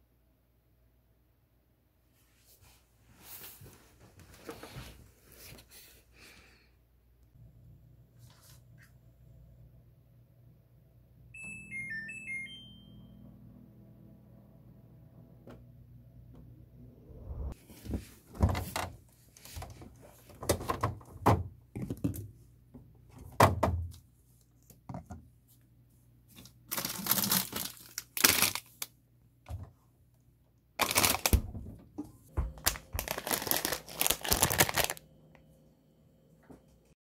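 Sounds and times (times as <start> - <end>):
packaging crinkling and tearing: 26.4 - 28.9, 30.8 - 31.4, 32.6 - 35.0.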